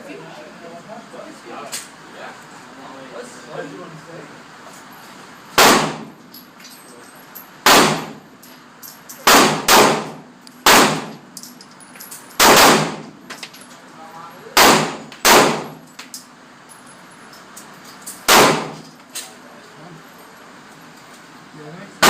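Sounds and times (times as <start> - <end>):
pistol shots: 5.6 - 6.1, 7.6 - 8.2, 9.2 - 11.2, 12.4 - 13.1, 14.6 - 15.9, 18.2 - 18.9.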